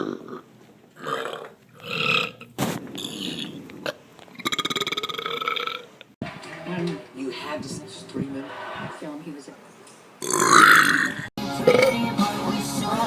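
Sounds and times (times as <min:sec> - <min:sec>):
person belching: 0:00.0 - 0:05.9, 0:10.2 - 0:12.1.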